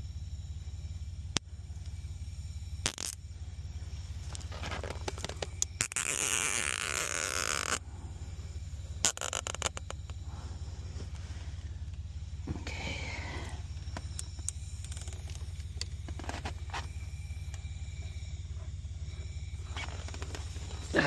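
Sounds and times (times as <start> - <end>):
steady low hum: 0.0 - 21.0
sharp clicks of zip tie: 2.8 - 3.2, 4.3 - 7.8, 9.0 - 10.2
zip tie ratcheting: 2.8 - 3.2, 4.6 - 7.8, 9.0 - 10.1.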